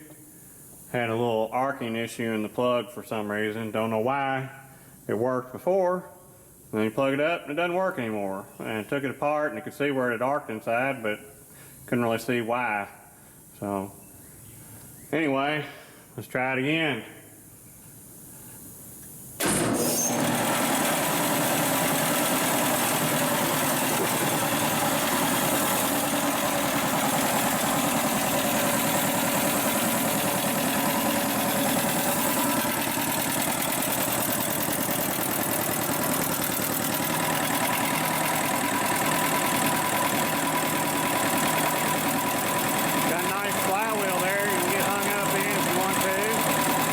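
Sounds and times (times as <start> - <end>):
air compressor pumping: 17.4 - 46.9.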